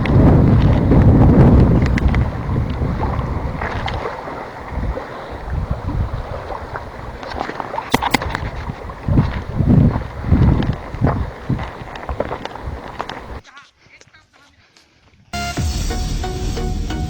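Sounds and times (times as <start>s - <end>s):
wind buffeting microphone: 0.0s - 13.4s
sharp clicks: 7.9s - 8.4s.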